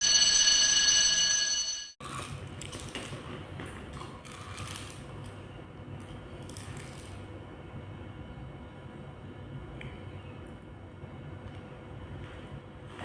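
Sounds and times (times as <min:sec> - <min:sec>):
electronic ringing tone: 0:00.0 - 0:02.0.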